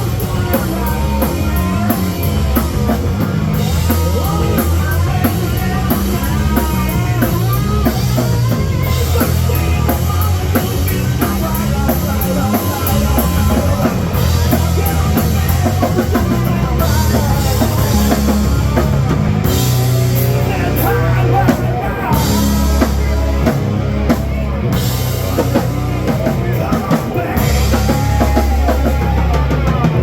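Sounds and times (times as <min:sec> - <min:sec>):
electric guitar bending pitch: 0:00.0 - 0:30.0
rock band playing: 0:00.0 - 0:30.0.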